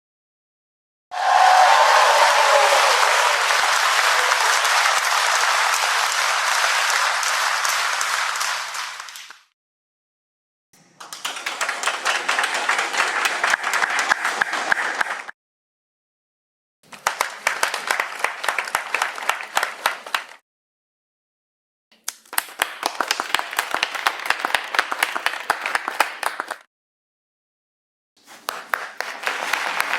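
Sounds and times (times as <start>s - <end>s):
audience applauding: 1.1s - 9.5s, 11.1s - 15.4s, 16.9s - 20.4s, 22.1s - 26.7s, 28.6s - 29.9s.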